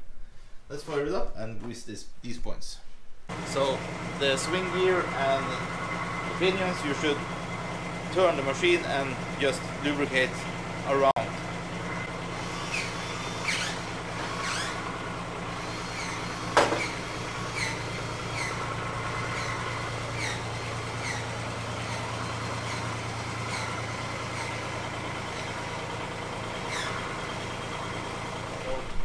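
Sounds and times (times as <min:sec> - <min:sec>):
diesel engine idling: 0:03.3 - 0:29.0
short high squeaks: 0:12.0 - 0:29.0.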